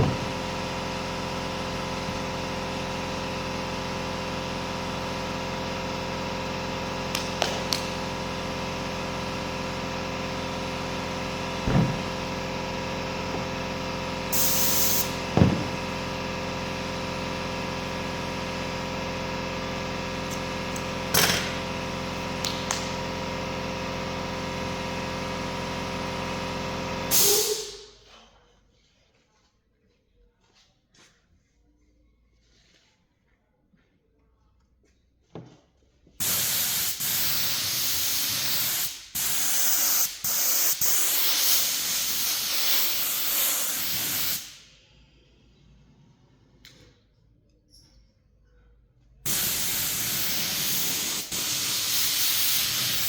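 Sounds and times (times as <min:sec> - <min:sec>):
mechanical hum: 0:00.0 - 0:33.9, 0:35.1 - 0:53.0
air hissing: 0:11.6 - 0:12.4, 0:14.3 - 0:15.9, 0:27.1 - 0:27.9, 0:36.2 - 0:44.7, 0:49.3 - 0:53.0
knocks: 0:11.7 - 0:12.1.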